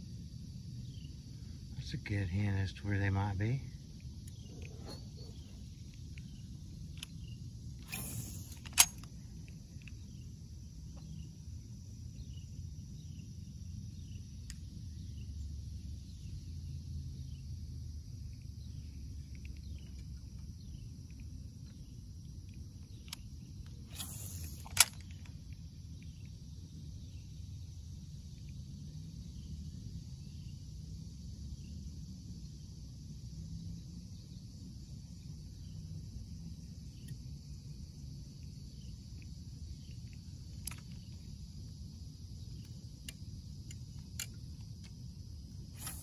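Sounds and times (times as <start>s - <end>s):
steady low rumble: 0.0s - 46.0s
fishing line hissing off reel: 4.4s - 9.2s, 23.1s - 25.4s, 45.6s - 46.0s
reel bail clicking shut: 7.8s - 10.0s, 23.0s - 25.3s.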